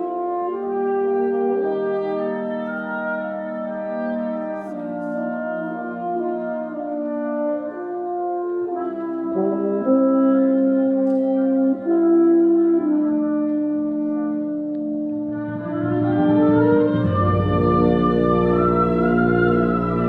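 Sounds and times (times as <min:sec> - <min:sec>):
mellow brass chords: 0:00.0 - 0:20.0
low bass notes: 0:15.7 - 0:20.0.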